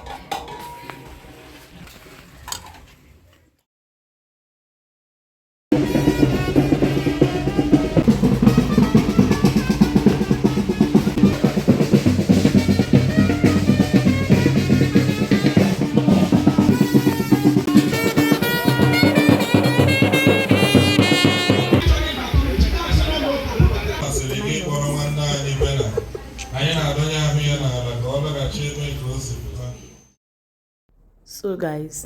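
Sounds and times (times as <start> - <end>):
music with fast drumming: 5.7 - 24.4.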